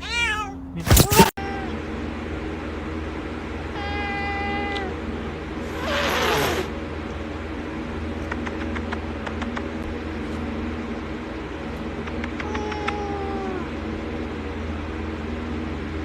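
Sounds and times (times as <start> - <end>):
cat meowing: 0.0 - 1.8, 12.4 - 13.7
low mechanical hum: 0.0 - 16.0
cat hissing: 5.7 - 6.7.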